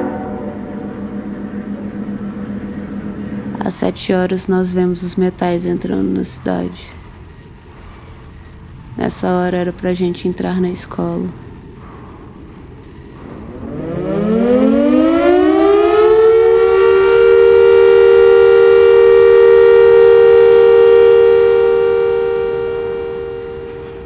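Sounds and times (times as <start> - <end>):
two-tone siren wail: 0.0 - 4.3, 13.3 - 24.0.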